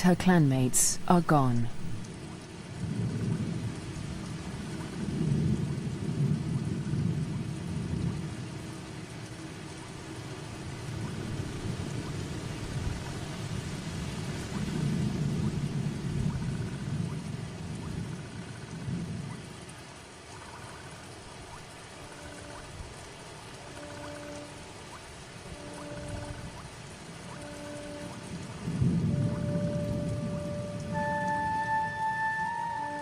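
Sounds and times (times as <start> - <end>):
heavy rain: 0.0 - 33.0
rolling thunder rumbles: 2.8 - 8.3, 28.1 - 31.8.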